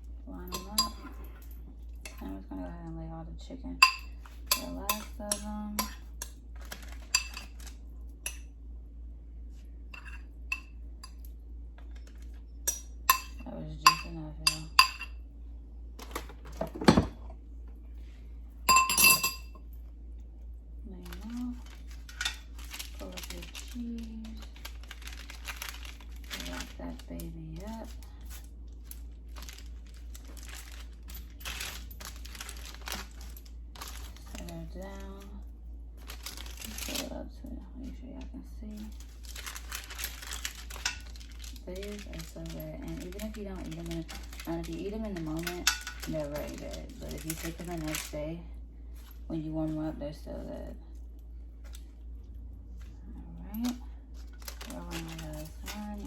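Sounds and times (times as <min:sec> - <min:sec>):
low steady hum: 0:00.0 - 0:56.0
dishes and utensils clinking: 0:00.5 - 0:02.3, 0:03.8 - 0:07.7, 0:10.0 - 0:11.2, 0:12.7 - 0:15.2, 0:18.7 - 0:19.6, 0:45.2 - 0:48.1
paper crinkling and rustling: 0:06.5 - 0:07.8, 0:21.0 - 0:35.4, 0:36.0 - 0:37.1, 0:38.8 - 0:48.2, 0:53.6 - 0:56.0.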